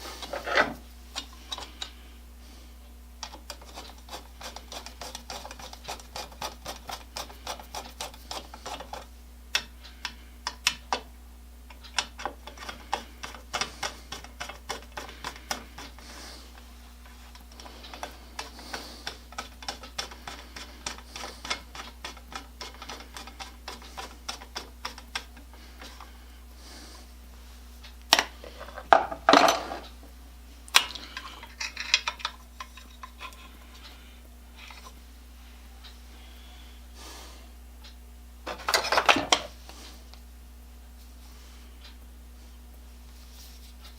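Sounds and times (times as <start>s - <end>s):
low workshop hum: 0.0s - 43.9s
metal parts rattling: 31.2s - 33.6s.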